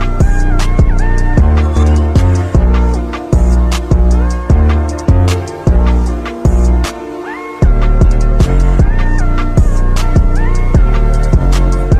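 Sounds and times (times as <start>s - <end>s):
hip-hop beat: 0.0s - 11.9s
sustained melody: 0.0s - 11.9s
heavy kick drum: 0.2s - 6.8s.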